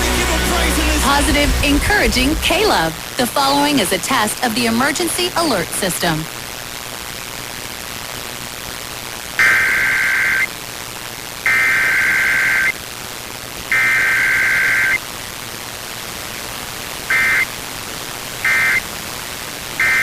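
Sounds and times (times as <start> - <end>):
radio hiss: 0.0 - 20.0
digital data bursts: 9.3 - 10.7, 11.4 - 12.9, 13.6 - 15.0, 17.0 - 17.6, 18.4 - 19.0, 19.8 - 20.0.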